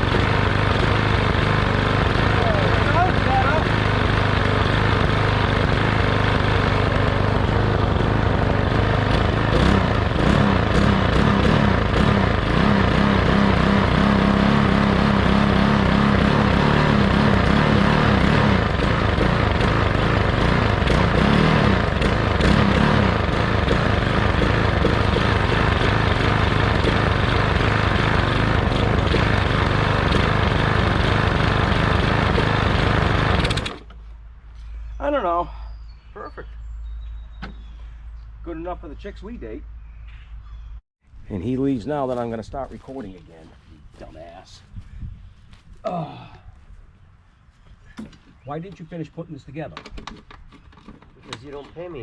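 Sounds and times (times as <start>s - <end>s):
lawn mower engine running: 0.0s - 34.1s.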